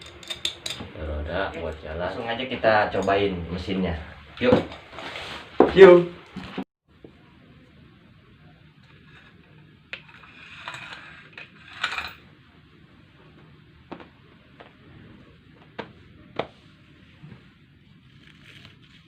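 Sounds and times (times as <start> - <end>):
rustling: 4.6 - 5.7.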